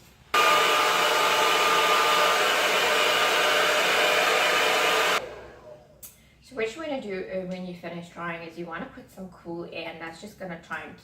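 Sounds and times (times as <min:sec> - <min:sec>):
hair dryer blowing: 0:00.3 - 0:06.0.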